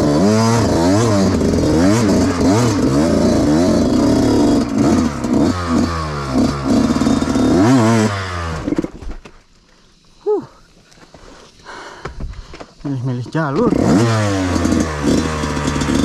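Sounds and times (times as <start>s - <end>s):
dirt bike engine revving: 0.0s - 9.0s, 13.3s - 16.0s.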